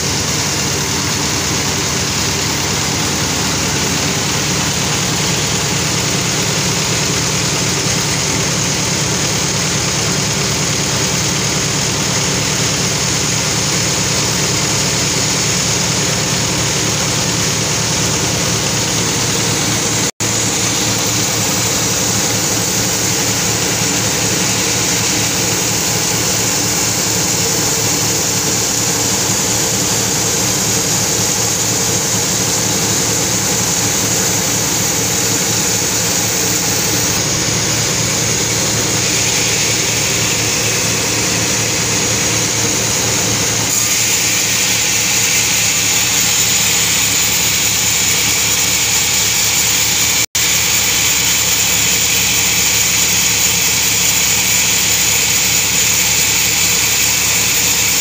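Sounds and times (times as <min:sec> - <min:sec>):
sawmill saw and engine droning: 0:00.0 - 0:58.0.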